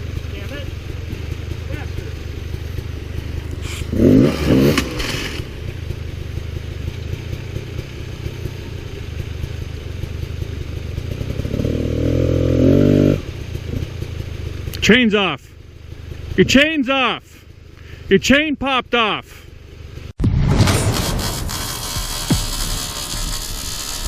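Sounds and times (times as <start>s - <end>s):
dirt bike engine revving: 0.0s - 15.3s, 20.7s - 24.0s.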